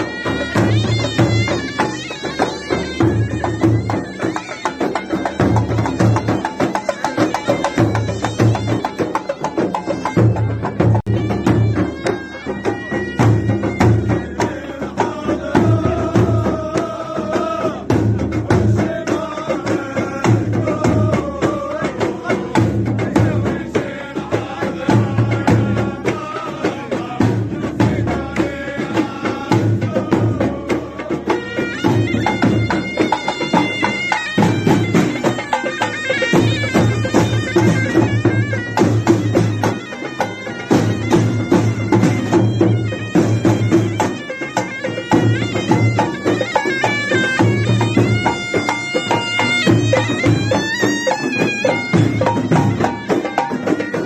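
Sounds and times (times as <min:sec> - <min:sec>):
reedy wind instrument melody: 0:00.0 - 0:17.8, 0:30.5 - 0:54.0
drums beating a rhythm: 0:00.0 - 0:54.0.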